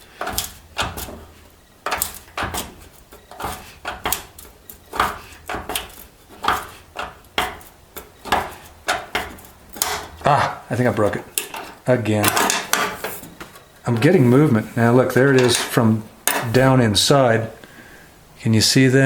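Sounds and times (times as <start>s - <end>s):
wrench clacking on metal nut: 0.2s - 1.2s, 1.8s - 10.2s, 11.3s - 13.2s, 15.3s - 16.7s.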